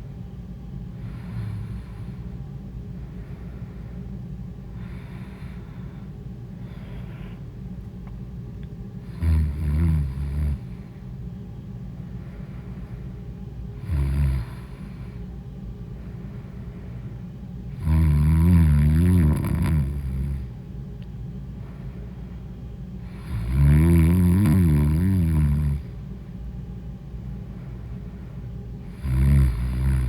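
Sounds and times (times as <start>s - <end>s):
steady low hum: 0.0s - 30.0s
woman snoring: 1.0s - 2.0s, 9.0s - 10.7s, 13.8s - 15.2s, 17.7s - 20.5s, 23.0s - 26.0s, 28.9s - 30.0s.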